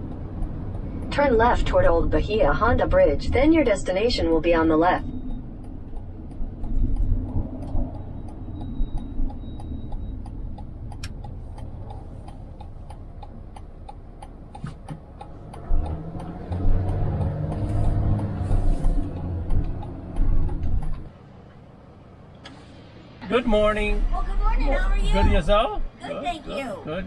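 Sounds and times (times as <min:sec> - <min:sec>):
turn signal ticking: 0:00.0 - 0:21.2
vehicle driving rumble: 0:00.0 - 0:27.0.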